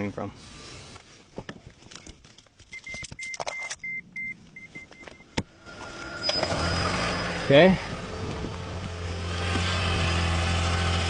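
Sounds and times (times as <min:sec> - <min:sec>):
car warning chime beeping: 0:02.7 - 0:07.4
car engine running: 0:04.4 - 0:11.0.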